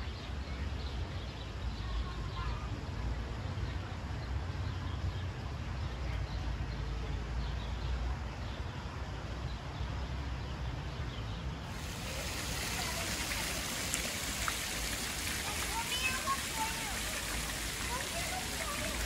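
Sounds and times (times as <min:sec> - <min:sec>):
even hiss: 0:11.7 - 0:19.0.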